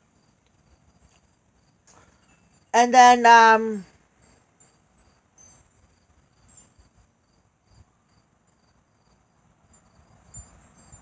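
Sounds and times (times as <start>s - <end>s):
crickets chirping: 4.3s - 11.0s.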